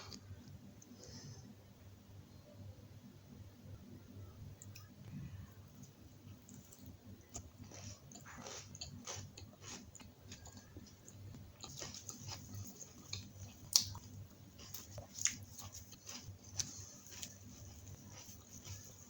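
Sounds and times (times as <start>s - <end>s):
person chewing food: 5.8s - 19.0s.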